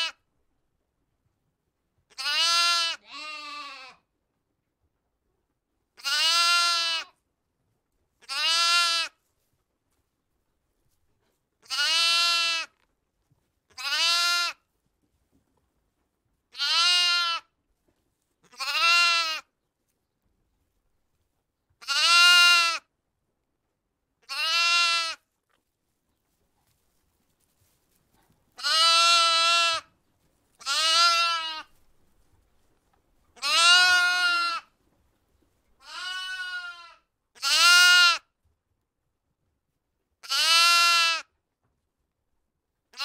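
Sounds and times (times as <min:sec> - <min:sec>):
bleating calls: 0:02.1 - 0:04.0, 0:06.0 - 0:07.2, 0:08.2 - 0:09.2, 0:11.6 - 0:12.7, 0:13.7 - 0:14.6, 0:16.5 - 0:17.5, 0:18.4 - 0:19.5, 0:21.8 - 0:22.9, 0:24.2 - 0:25.2, 0:28.6 - 0:29.9, 0:30.6 - 0:31.7, 0:33.4 - 0:34.7, 0:35.8 - 0:38.3, 0:40.2 - 0:41.3.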